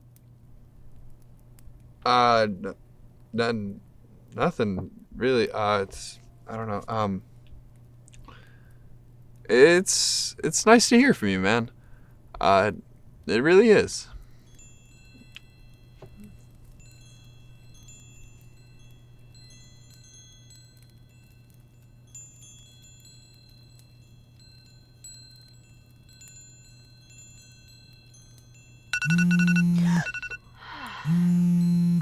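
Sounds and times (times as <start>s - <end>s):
low steady hum: 0.0s - 32.0s
wind chimes tinkling: 13.4s - 30.6s
loud held low tone: 29.0s - 30.2s.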